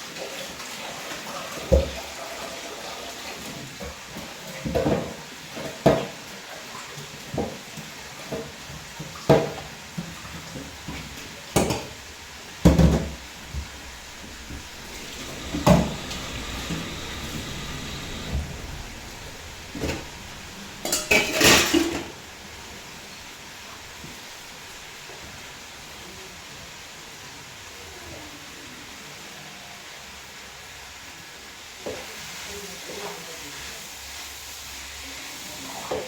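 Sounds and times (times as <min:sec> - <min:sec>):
pots and utensils clattering: 0:10.5 - 0:22.3
steady background hiss: 0:10.5 - 0:26.3.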